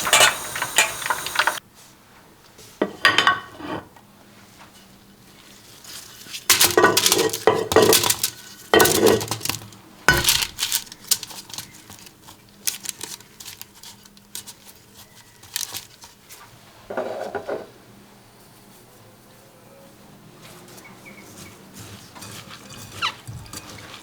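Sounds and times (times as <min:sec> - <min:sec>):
kitchen utensils clattering: 0:00.0 - 0:01.6, 0:06.4 - 0:14.5, 0:21.8 - 0:24.0.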